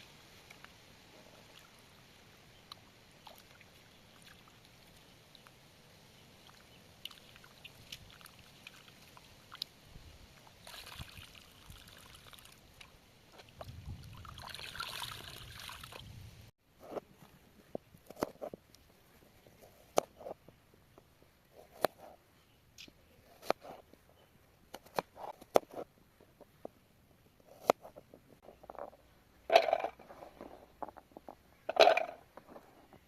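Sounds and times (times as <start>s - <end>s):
handling noise with small clicks: 0.4s - 0.8s, 16.8s - 33.0s
water sloshing and splashing: 10.4s - 16.0s.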